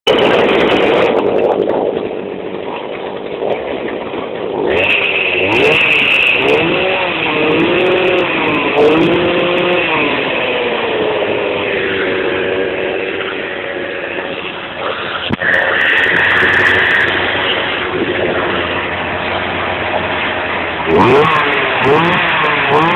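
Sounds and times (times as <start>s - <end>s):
two-stroke engine revving: 0.1s - 1.5s, 3.4s - 22.9s
steady high whine: 0.1s - 22.9s.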